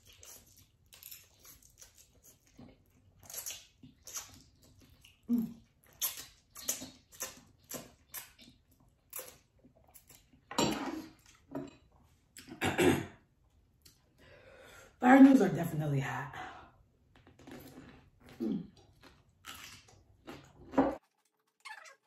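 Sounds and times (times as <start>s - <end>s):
wet chewing and mouth smacking: 0.0s - 10.5s.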